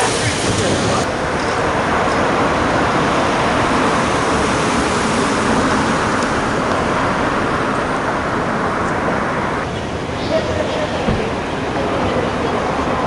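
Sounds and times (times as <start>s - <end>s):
road traffic rushing: 0.0s - 13.0s.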